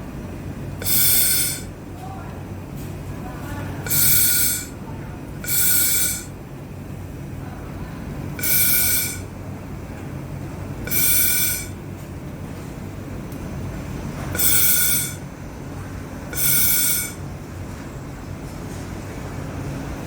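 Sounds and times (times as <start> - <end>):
steady machine hum: 0.0 - 20.0
laser welder hissing bursts: 0.8 - 1.7, 3.9 - 4.8, 5.5 - 6.3, 8.4 - 9.3, 10.9 - 11.8, 14.4 - 15.2, 16.4 - 17.2.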